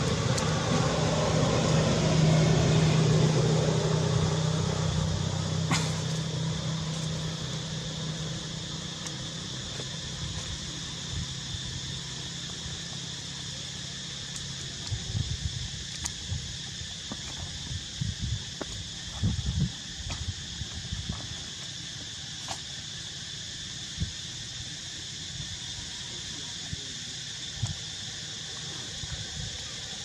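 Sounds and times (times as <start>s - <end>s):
motor engine humming: 0.0s - 19.8s.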